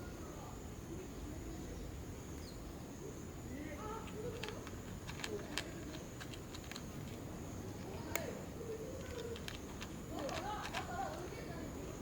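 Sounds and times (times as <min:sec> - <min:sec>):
sharp clicks: 0:04.0 - 0:07.2, 0:09.0 - 0:11.3
cat chewing food: 0:04.1 - 0:07.9, 0:08.9 - 0:11.4.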